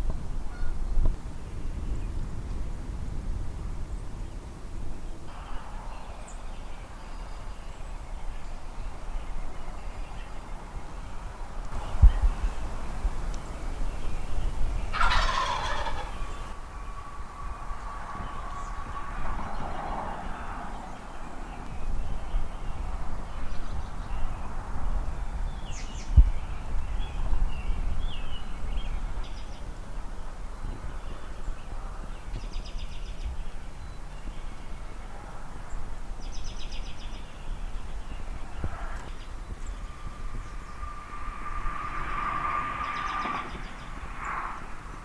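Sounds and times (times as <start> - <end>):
wind rumble on microphone: 0.0 - 45.0
birds chirping and trilling: 11.7 - 16.6.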